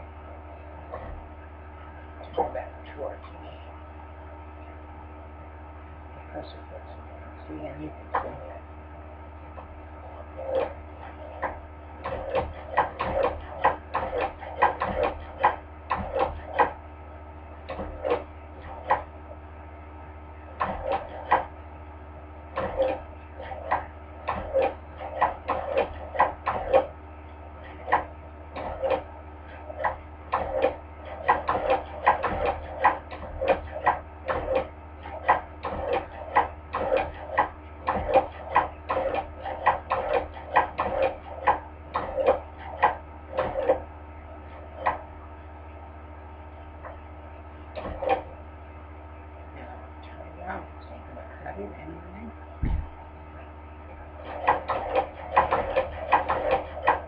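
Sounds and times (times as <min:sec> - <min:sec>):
hand-crank sewing machine clacking: 0:54.2 - 0:57.0.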